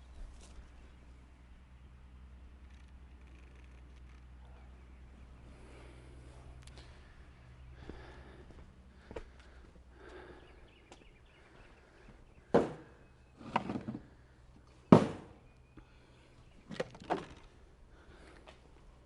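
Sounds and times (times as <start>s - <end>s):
knocks and thumps: 12.5s - 12.9s, 14.9s - 15.4s.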